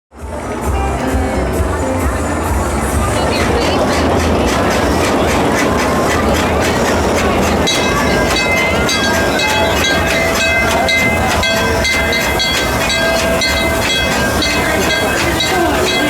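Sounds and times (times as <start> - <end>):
ride train rumbling on track: 0.1 - 16.0
thin high ringing tones: 6.4 - 16.0.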